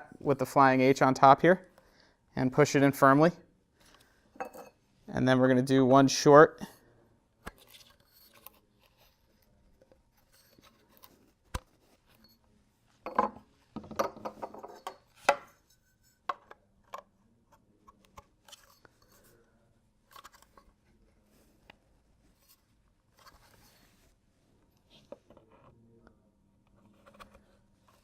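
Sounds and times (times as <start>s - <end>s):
plastic parts clicking and knocking: 13.1s - 15.5s.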